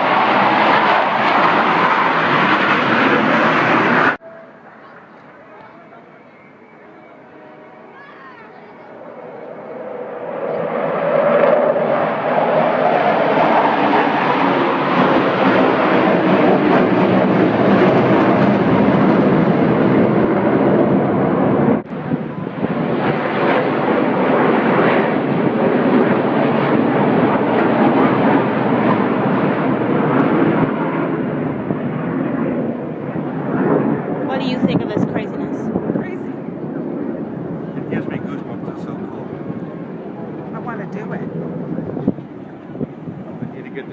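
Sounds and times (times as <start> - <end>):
jets flying past low: 0.0 - 5.0, 6.4 - 43.9.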